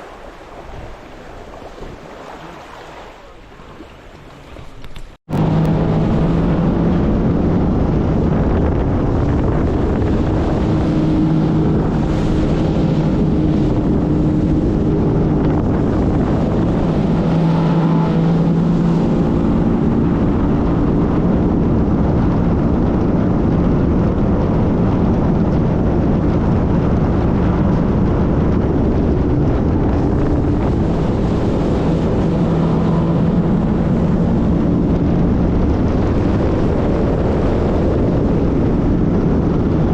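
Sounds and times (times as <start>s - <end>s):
water rushing: 0.0s - 21.4s, 29.4s - 38.9s
jet ski engine drone: 0.0s - 39.9s.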